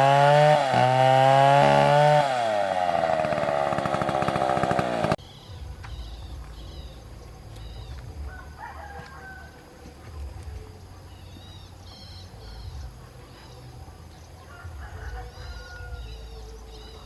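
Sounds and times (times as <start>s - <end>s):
chainsaw engine revving down: 0.0s - 5.2s.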